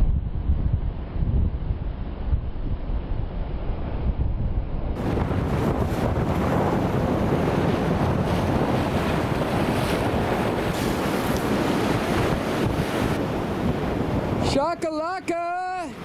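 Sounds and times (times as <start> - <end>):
wind buffeting microphone: 0.0 - 16.0
ocean surf washing onto beach: 5.0 - 16.0.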